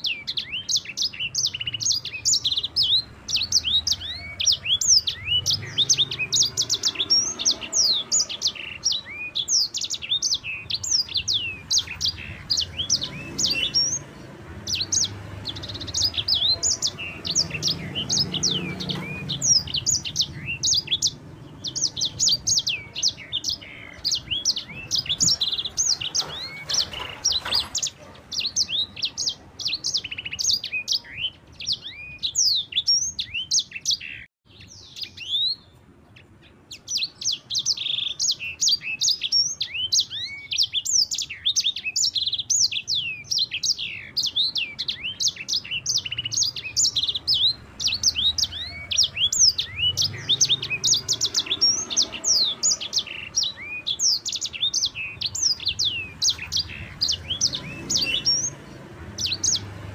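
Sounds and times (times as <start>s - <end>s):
songbird singing rolling chirps: 0.0s - 59.9s.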